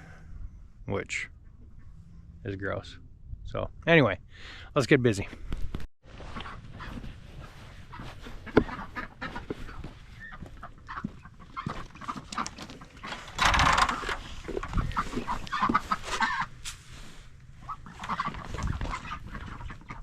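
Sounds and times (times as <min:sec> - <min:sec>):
chickens clucking: 0:06.2 - 0:16.6, 0:17.6 - 0:20.0
ducks quacking: 0:06.2 - 0:16.6, 0:17.6 - 0:20.0.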